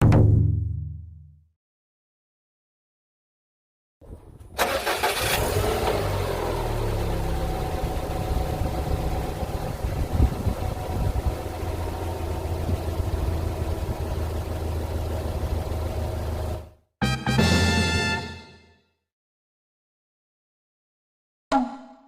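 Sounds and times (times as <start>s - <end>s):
car engine starting and idling: 4.4s - 16.8s.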